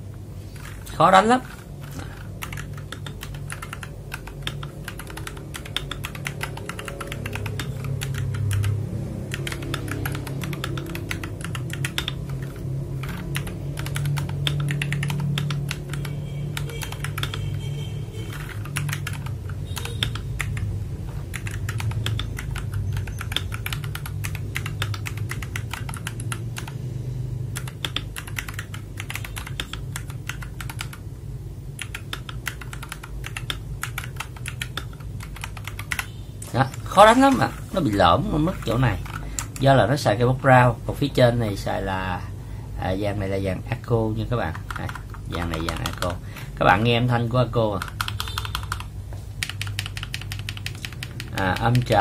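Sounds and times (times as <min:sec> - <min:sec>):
fast mechanical keyboard typing: 0:00.5 - 0:26.8, 0:27.4 - 0:31.0, 0:31.7 - 0:40.0, 0:44.3 - 0:52.0.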